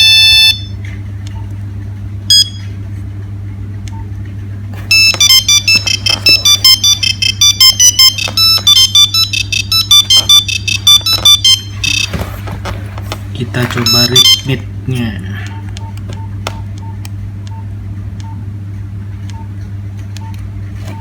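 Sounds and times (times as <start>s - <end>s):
mobile phone ringtone beeps: 0.0s - 0.8s, 4.9s - 12.2s, 13.8s - 14.5s.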